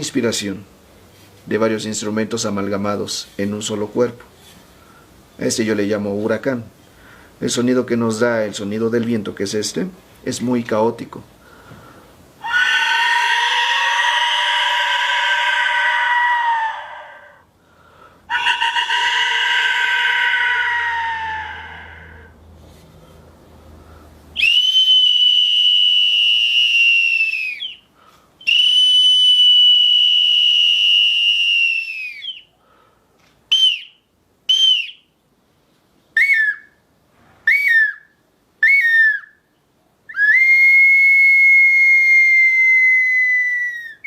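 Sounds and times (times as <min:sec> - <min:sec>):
wind instrument whistling: 0:24.4 - 0:32.5, 0:33.5 - 0:35.1, 0:36.2 - 0:36.8, 0:37.4 - 0:39.5, 0:40.1 - 0:44.0.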